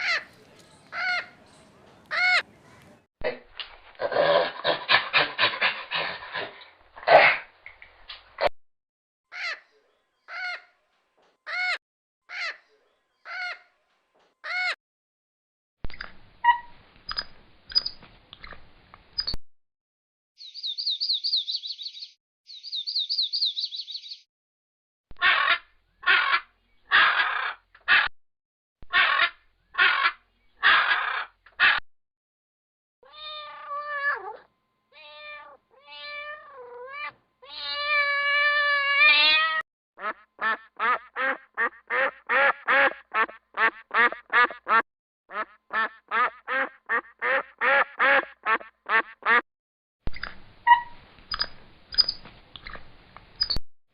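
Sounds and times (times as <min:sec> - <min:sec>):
high chirping trills: 0:20.4 - 0:24.2, 0:50.1 - 0:52.2, 0:53.4 - 0:53.6
cat meowing: 0:33.0 - 0:39.6
ducks quacking: 0:40.0 - 0:49.4.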